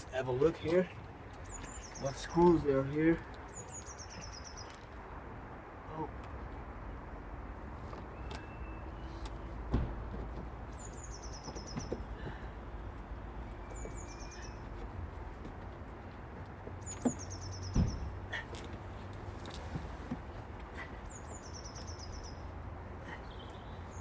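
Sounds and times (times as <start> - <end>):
small bird singing: 0.8 - 2.8, 3.5 - 4.8, 10.7 - 12.0, 13.6 - 14.8, 16.8 - 18.0, 21.0 - 22.5.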